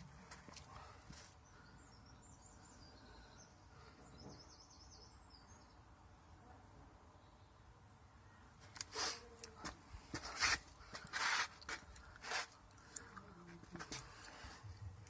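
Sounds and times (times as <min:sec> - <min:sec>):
faint bird chirps and trills: 0:00.7 - 0:06.4.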